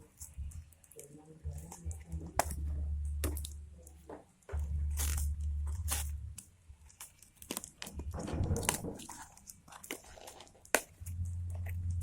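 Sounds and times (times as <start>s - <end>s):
packaging rustling and crinkling: 4.5s - 12.0s
low hum: 11.0s - 12.0s.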